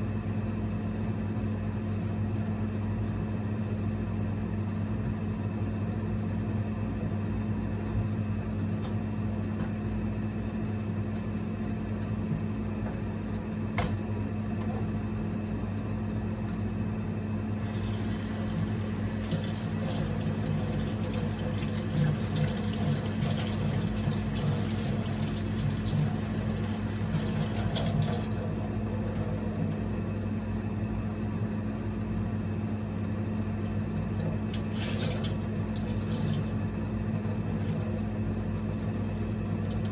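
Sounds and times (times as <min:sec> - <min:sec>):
low electrical hum: 0:00.0 - 0:39.9
water running or splashing: 0:17.6 - 0:30.3, 0:33.1 - 0:39.9.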